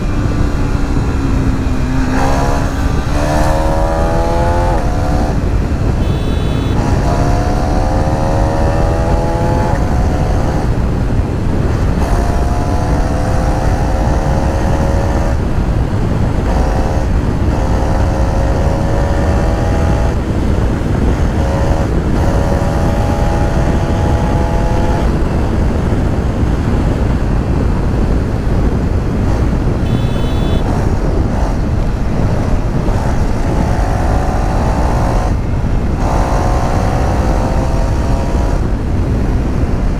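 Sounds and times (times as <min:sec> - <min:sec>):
motorcycle engine accelerating: 0:00.0 - 0:39.9
wind rush on microphone: 0:00.0 - 0:39.9.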